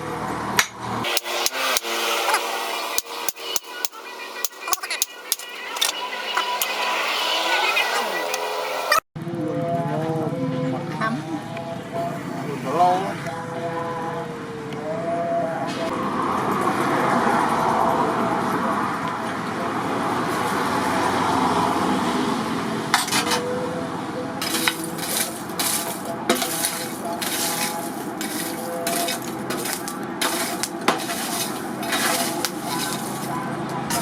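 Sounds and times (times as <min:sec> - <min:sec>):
metal clinking and tapping: 0:03.0 - 0:06.8.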